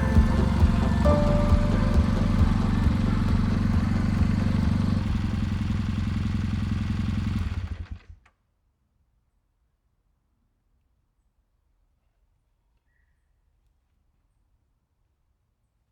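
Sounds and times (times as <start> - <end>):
motorcycle engine idling: 0.0 - 8.2.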